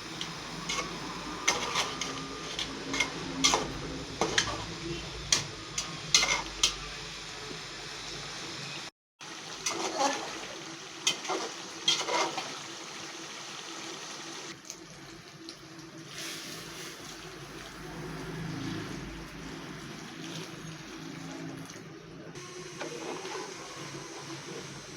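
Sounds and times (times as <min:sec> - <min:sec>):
hiss of liquid cooking: 0:00.0 - 0:21.4, 0:22.4 - 0:24.9.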